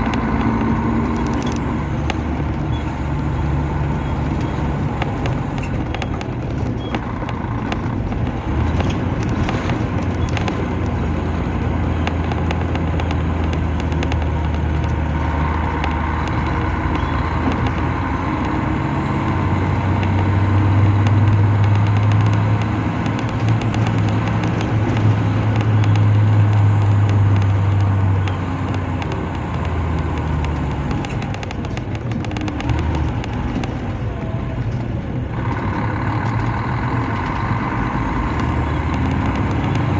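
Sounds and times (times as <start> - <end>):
diesel coach engine running: 0.0 - 39.9.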